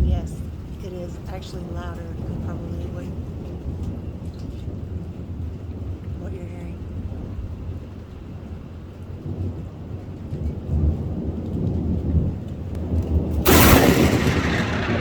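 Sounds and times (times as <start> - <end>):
thunder rumbling: 0.0 - 15.0
loud thunderclap: 9.3 - 15.0.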